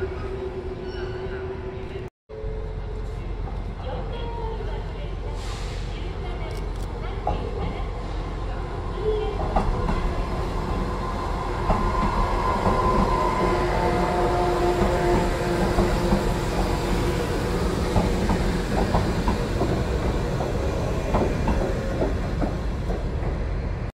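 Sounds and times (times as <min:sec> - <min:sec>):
electric train whine: 0:10.0 - 0:23.9
train wheels clicking over rail joints: 0:14.8 - 0:23.6.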